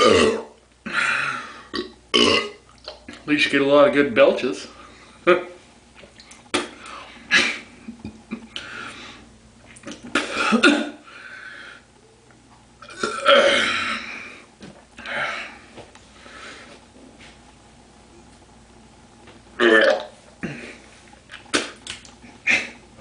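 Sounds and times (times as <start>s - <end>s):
man belching: 0.0s - 0.6s, 1.7s - 2.6s, 12.8s - 13.8s, 19.6s - 20.1s.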